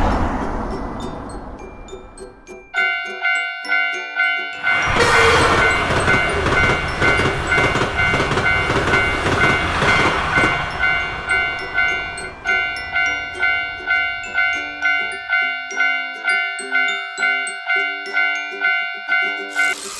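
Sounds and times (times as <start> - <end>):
train rumble and rail noise: 0.0 - 2.7, 4.6 - 15.4
railroad crossing bell ringing: 0.0 - 19.9.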